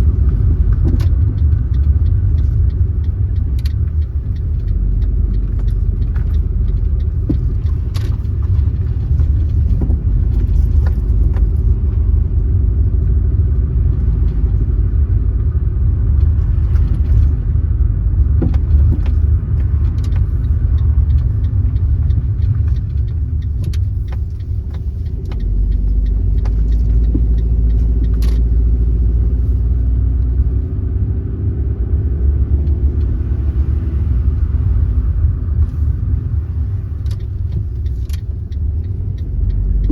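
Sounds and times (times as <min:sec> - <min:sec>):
small clicks and rattles: 0:00.0 - 0:12.5, 0:18.2 - 0:30.7, 0:32.6 - 0:39.9
car tyres and engine rumble: 0:00.0 - 0:39.9.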